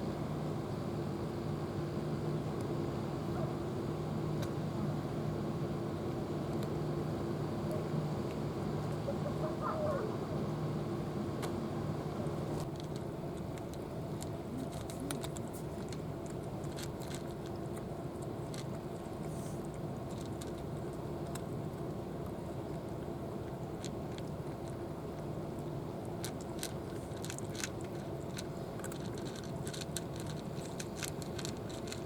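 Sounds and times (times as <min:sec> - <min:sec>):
steady low hum: 0:00.0 - 0:32.0
cat crunching dry food: 0:12.2 - 0:32.0.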